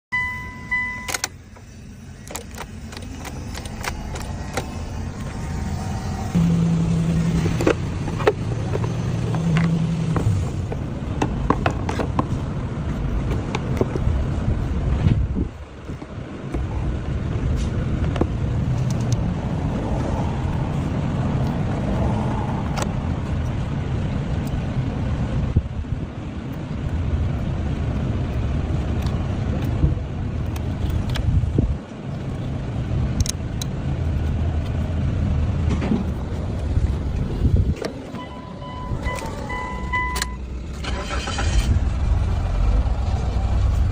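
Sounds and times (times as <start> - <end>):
electronic beep: 0.1 - 1.3, 38.2 - 40.4
car engine running: 0.4 - 31.6
sharp metallic clicks: 0.7 - 6.5
low rumble: 1.6 - 26.1, 38.8 - 43.9.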